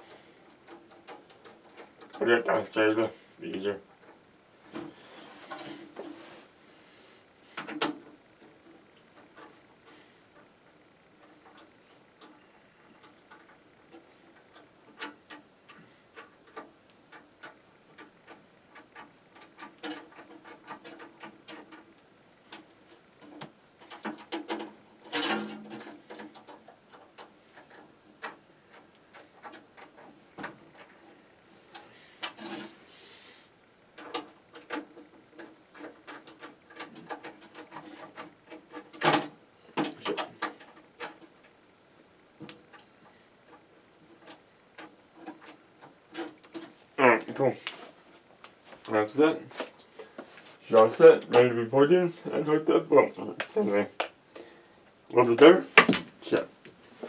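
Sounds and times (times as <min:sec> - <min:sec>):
parts clattering: 0:55.7 - 0:57.0.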